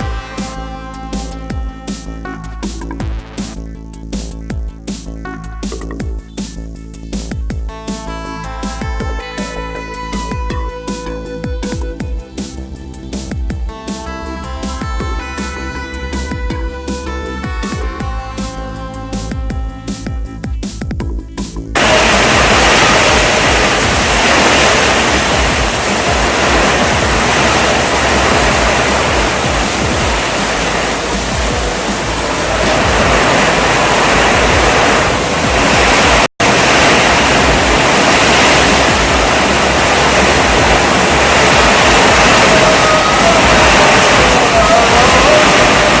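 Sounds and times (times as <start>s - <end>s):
heavy rain pouring: 21.8s - 46.0s.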